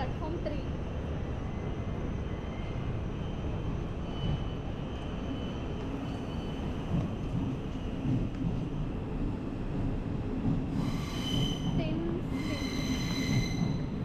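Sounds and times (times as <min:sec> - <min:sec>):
train rumbling into station: 0:00.0 - 0:14.0
thin squeal of train wheels: 0:01.5 - 0:08.0, 0:10.7 - 0:14.0.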